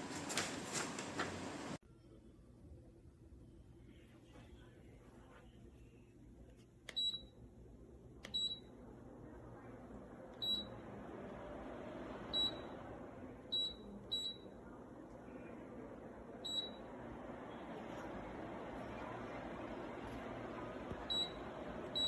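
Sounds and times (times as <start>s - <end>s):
fan air rushing: 0.0s - 1.8s, 7.6s - 22.0s
tower fan beeping: 6.9s - 7.4s, 8.2s - 22.0s.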